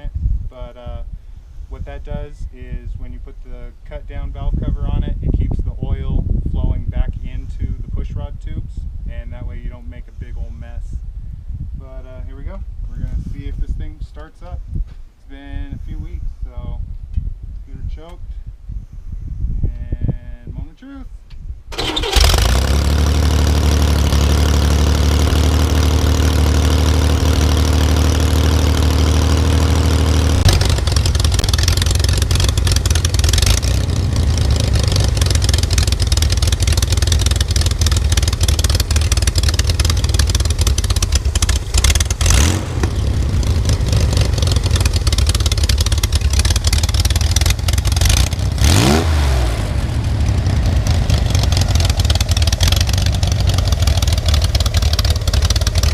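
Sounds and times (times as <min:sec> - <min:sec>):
engine starting and running: 0:21.7 - 0:55.9.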